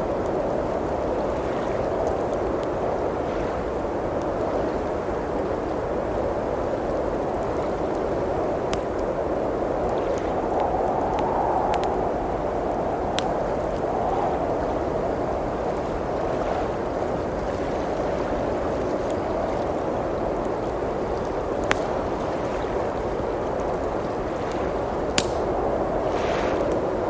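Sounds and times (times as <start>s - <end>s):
blizzard wind blowing: 0.0s - 27.0s
wood fire crackling: 5.2s - 15.6s, 18.8s - 27.0s
sharp pops from fire: 8.7s - 9.2s, 25.1s - 25.8s.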